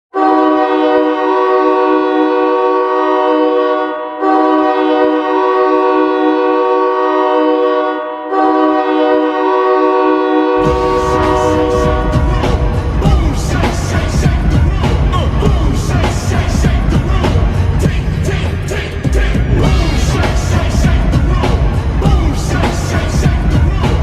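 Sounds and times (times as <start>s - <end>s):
goal horn blasts: 0.1s - 14.0s
goal song music: 10.5s - 24.0s.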